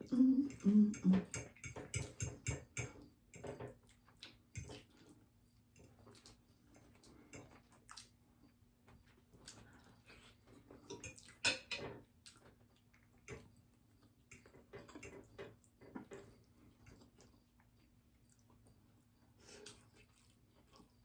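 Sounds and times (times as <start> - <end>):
chewing crispy fried fish: 5.9 - 11.5, 15.6 - 21.0.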